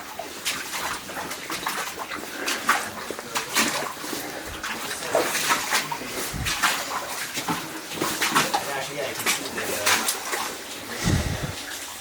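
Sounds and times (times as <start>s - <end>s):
wading splashes in water: 0.0s - 12.0s.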